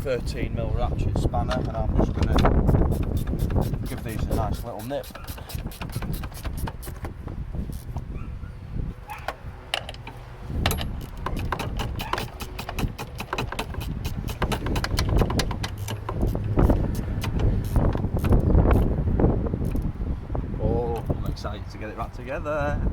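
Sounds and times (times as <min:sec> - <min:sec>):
ratchet spanner clicking: 0:02.3 - 0:07.1, 0:09.7 - 0:19.0, 0:19.6 - 0:19.9.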